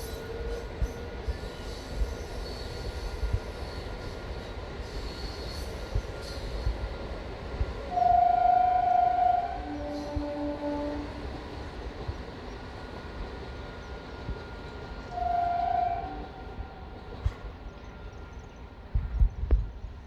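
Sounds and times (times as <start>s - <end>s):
train horn blasts: 0.0s - 4.4s, 7.6s - 11.4s, 14.9s - 18.2s
train rumbling: 0.0s - 20.0s.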